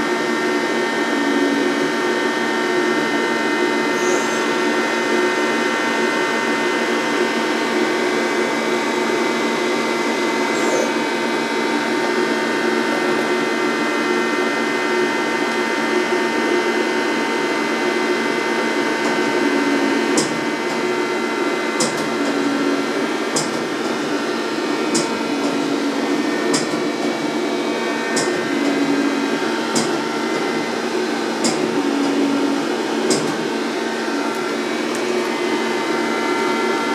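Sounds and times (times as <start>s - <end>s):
lathe machine whirring: 0.0s - 36.9s.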